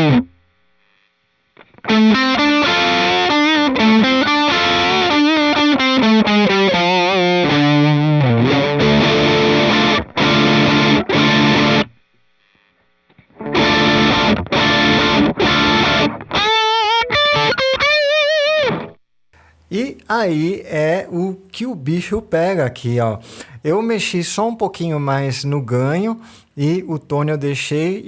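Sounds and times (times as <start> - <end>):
overdriven electric guitar: 0.0 - 0.4, 1.6 - 12.0, 13.2 - 19.0.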